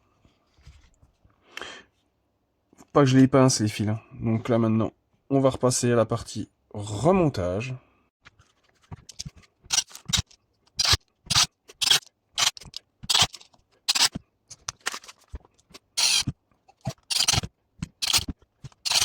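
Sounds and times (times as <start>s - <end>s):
plastic housing scrapes and clicks: 8.9s - 19.0s.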